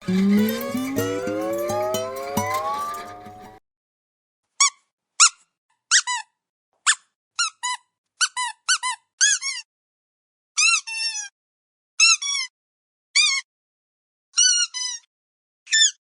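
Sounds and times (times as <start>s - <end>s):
squeaky dog toy squeaks: 4.6s - 6.3s, 14.4s - 15.1s.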